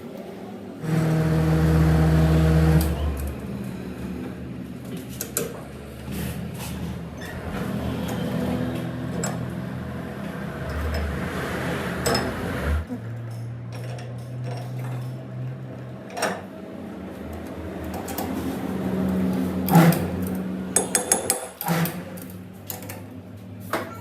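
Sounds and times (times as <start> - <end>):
steady hum: 0.0 - 7.2
rough mechanical noise: 0.7 - 23.8
electric motor humming: 0.8 - 3.4.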